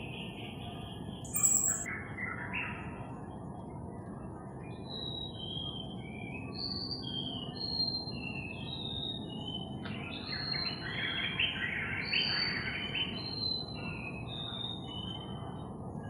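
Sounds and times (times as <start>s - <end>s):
birds whistling: 1.3s - 1.9s.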